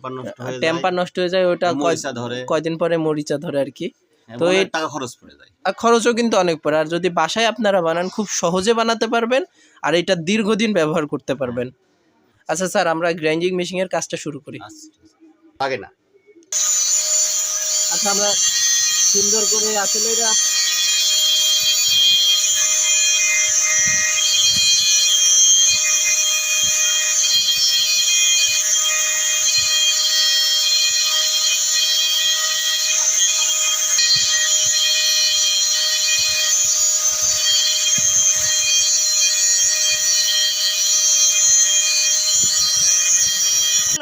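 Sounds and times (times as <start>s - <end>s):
electric grinder whining: 16.6s - 44.0s.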